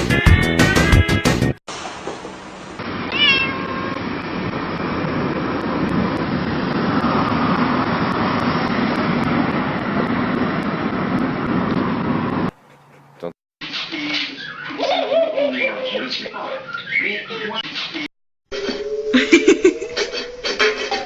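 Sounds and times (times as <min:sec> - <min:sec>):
steady rushing noise: 0:01.7 - 0:12.5
cat meowing: 0:03.1 - 0:04.0.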